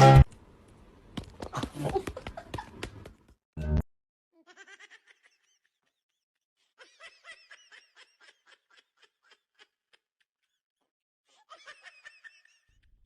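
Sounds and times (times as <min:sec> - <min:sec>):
person laughing: 0:01.5 - 0:03.0, 0:04.4 - 0:10.6.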